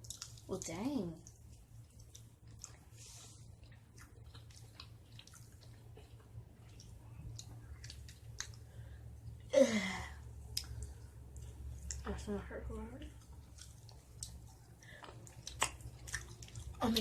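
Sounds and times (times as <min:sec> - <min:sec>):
wet chewing mouth clicks: 0:00.0 - 0:08.8, 0:13.0 - 0:17.0.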